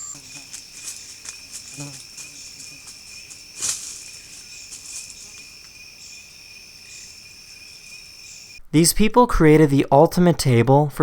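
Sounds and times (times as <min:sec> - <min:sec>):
insects chirring: 0:00.0 - 0:08.6
brief rustle: 0:00.5 - 0:05.5.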